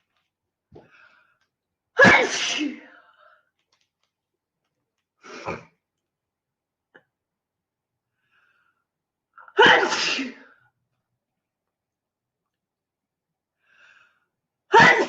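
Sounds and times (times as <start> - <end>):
woman sneezing: 2.0 - 2.9, 9.5 - 10.6, 14.7 - 15.0.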